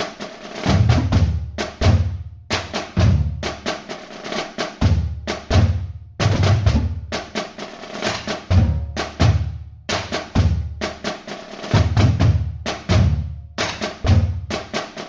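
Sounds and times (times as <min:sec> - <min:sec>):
snare drum strikes: 0:00.0 - 0:15.0
booming bass drum thumps: 0:00.6 - 0:02.2, 0:04.8 - 0:07.2, 0:08.3 - 0:09.6, 0:11.7 - 0:13.4.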